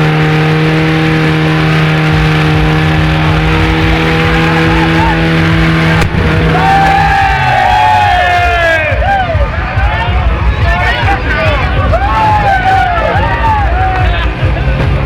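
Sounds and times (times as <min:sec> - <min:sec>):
car engine at high revs: 0:00.0 - 0:08.4
people shouting: 0:02.5 - 0:15.0.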